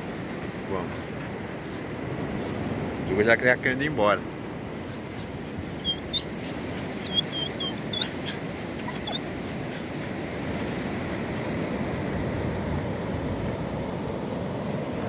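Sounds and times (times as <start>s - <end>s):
ocean surf washing on beach: 0.0s - 15.0s
high-pitched squeaks: 5.8s - 9.2s.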